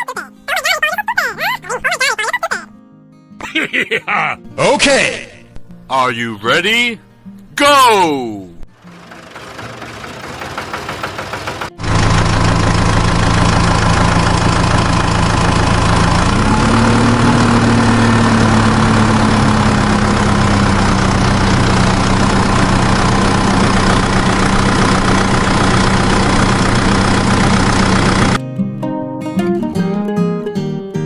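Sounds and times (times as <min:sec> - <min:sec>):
tractor engine running: 0:08.7 - 0:28.4.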